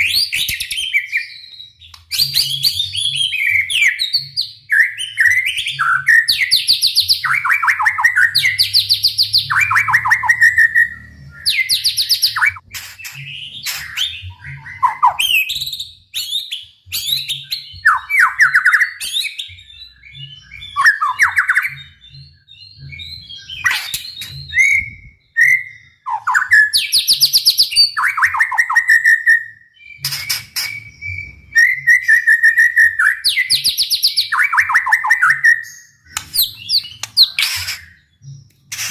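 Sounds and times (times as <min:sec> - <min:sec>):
bird singing trills: 0:00.0 - 0:38.9
sharp clicking bird notes: 0:01.8 - 0:02.8, 0:36.1 - 0:38.9.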